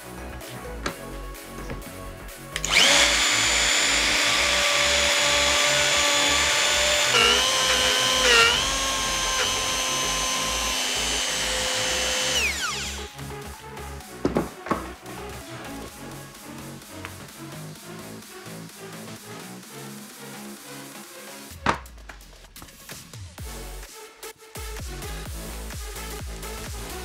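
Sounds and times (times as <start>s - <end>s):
power tool motor whining: 2.6s - 13.1s.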